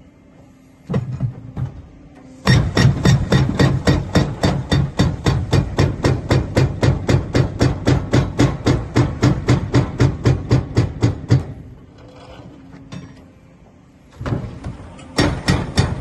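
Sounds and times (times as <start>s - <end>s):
hydraulic breaker hammering: 2.4s - 11.8s, 14.2s - 16.0s.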